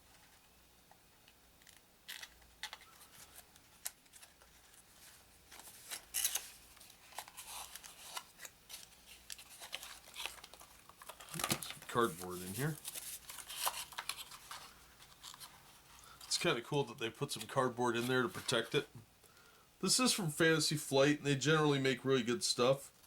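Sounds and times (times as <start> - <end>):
packaging scratching and rustling: 1.6 - 16.4.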